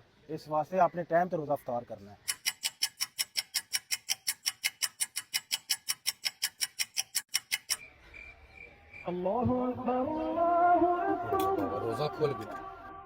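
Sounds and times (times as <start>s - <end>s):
clock ticking rapidly: 2.2s - 7.9s
voice singing long call: 9.0s - 13.0s.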